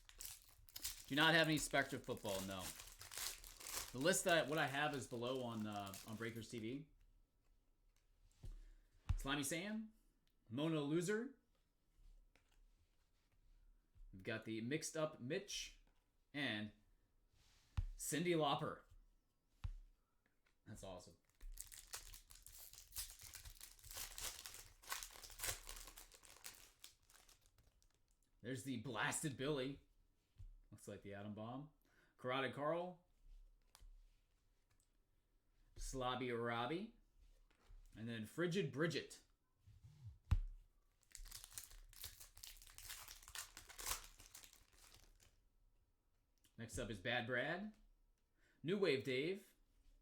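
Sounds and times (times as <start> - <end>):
foil wrapper crinkling and tearing: 0.0 - 6.4, 21.5 - 28.0, 41.0 - 45.3.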